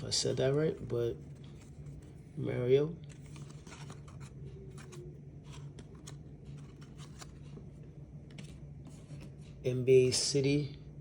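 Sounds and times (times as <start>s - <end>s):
low steady hum: 0.0s - 11.0s
trading cards clicking and rustling: 3.0s - 9.6s.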